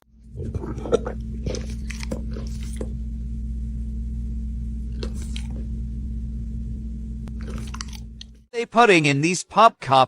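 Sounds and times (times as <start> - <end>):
low machine hum: 0.0 - 8.5
short crunchy noises: 4.9 - 5.7, 7.3 - 8.4.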